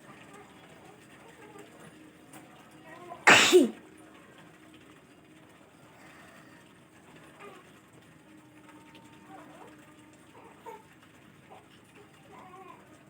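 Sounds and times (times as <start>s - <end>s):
sharp burst of breath: 3.3s - 3.7s.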